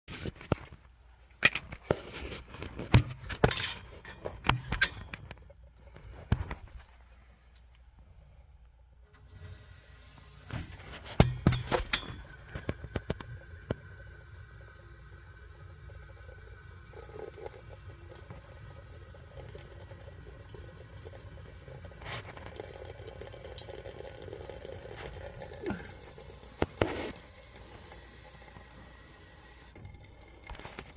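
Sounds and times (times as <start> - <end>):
boiler bubbling: 7.9 - 30.9
boiler metallic clicks and knocks: 11.1 - 13.8.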